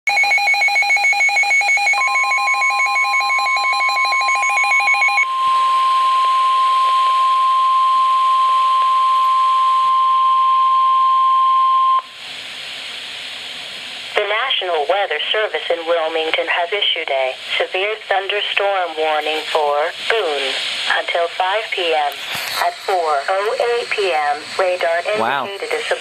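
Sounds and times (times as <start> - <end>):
radio hiss: 14.0 - 26.0.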